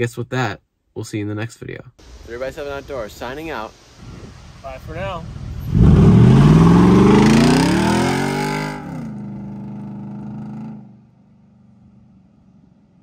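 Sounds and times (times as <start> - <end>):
motor revving: 5.7 - 8.8.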